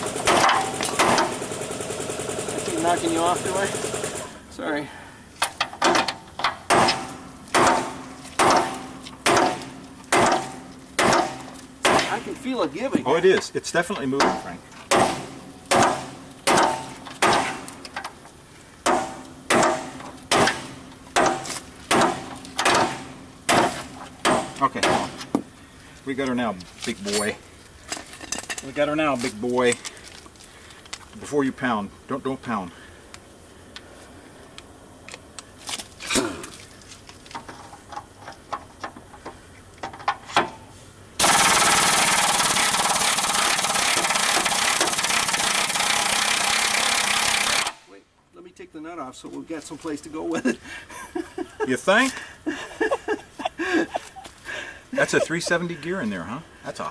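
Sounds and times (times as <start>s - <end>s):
impact wrench rattling: 0.0s - 4.4s, 41.2s - 47.8s
hand tools clinking: 0.1s - 1.4s, 26.2s - 31.1s
hammer striking bolt: 0.2s - 1.4s, 5.5s - 12.2s, 14.2s - 18.1s, 18.8s - 25.4s.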